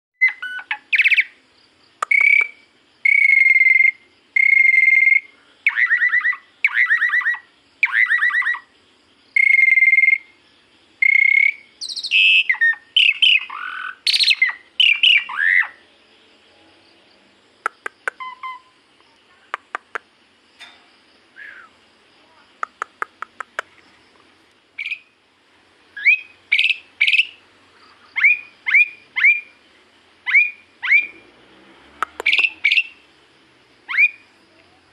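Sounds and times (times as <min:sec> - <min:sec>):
bird singing whistled phrases: 0:00.2 - 0:01.4, 0:02.0 - 0:08.7, 0:09.4 - 0:10.3, 0:11.0 - 0:15.8, 0:18.1 - 0:18.7, 0:21.4 - 0:21.8, 0:24.8 - 0:25.1, 0:26.0 - 0:27.4, 0:28.1 - 0:29.6, 0:30.2 - 0:31.2, 0:32.2 - 0:33.0, 0:33.9 - 0:34.3
short sharp bird clicks: 0:02.0 - 0:02.6, 0:17.6 - 0:18.3, 0:22.6 - 0:23.8, 0:32.0 - 0:32.8.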